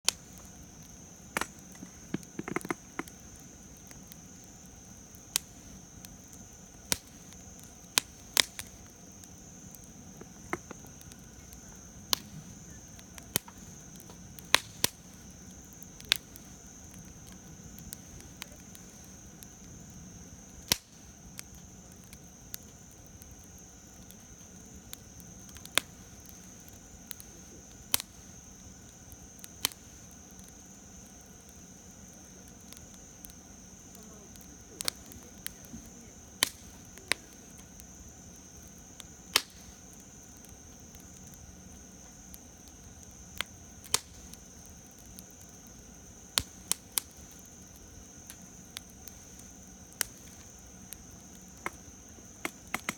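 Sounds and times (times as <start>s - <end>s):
campfire crackling: 0.0s - 52.9s.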